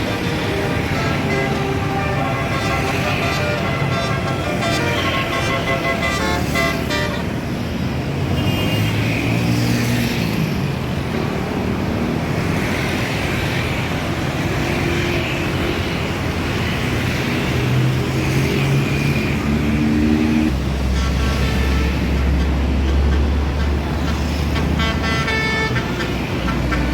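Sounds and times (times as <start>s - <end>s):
large vehicle engine running: 0.0s - 6.7s
road traffic noise: 0.0s - 26.9s
multi-note bus horn: 0.1s - 7.4s, 20.8s - 26.9s.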